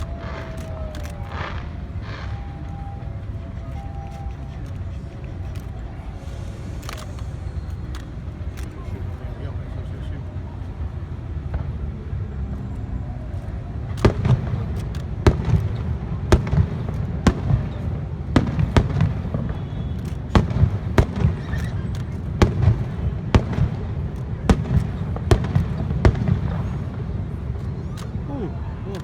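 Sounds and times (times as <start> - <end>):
fireworks bursting with sharp bangs: 0.0 - 4.8, 10.8 - 12.8, 13.4 - 29.0.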